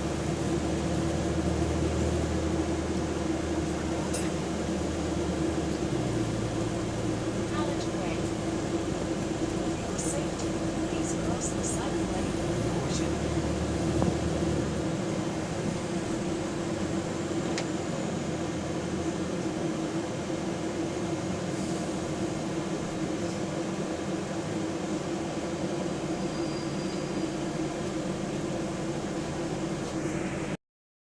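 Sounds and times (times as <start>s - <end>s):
bus diesel engine droning: 0.0s - 30.6s.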